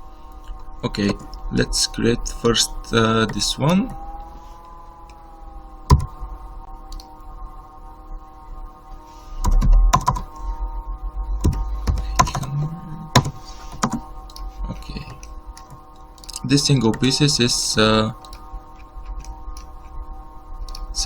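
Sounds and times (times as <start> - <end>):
steady held tones: 0.0 - 21.0
computer keyboard keystrokes: 9.5 - 10.3, 11.4 - 12.5, 13.1 - 17.1, 18.2 - 19.9, 20.6 - 20.9.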